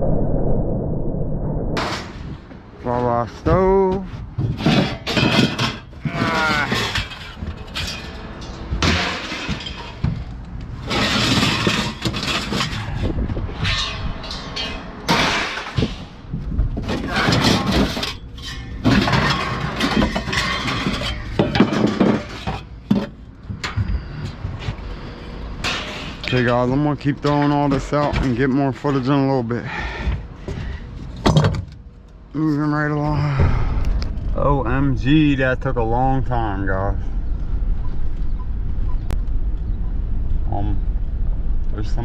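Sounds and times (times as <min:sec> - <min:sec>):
scrap metal crashing: 0:01.8 - 0:02.4, 0:04.4 - 0:23.2, 0:25.6 - 0:26.7.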